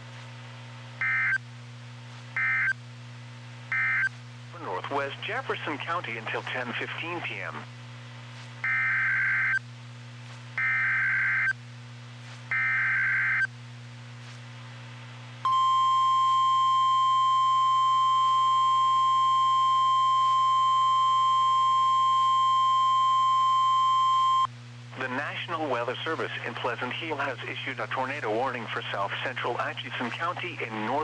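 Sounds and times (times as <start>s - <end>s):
steady warning alarm tone: 15.5s - 24.5s.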